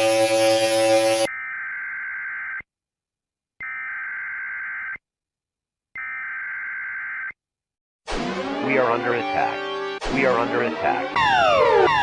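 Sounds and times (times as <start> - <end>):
electronic alert beep: 11.2 - 12.0.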